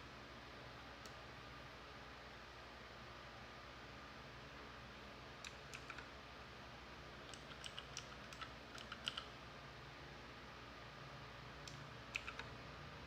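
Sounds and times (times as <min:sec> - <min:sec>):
clicky keyboard keystrokes: 0:05.4 - 0:06.1, 0:07.3 - 0:09.3, 0:11.7 - 0:12.5.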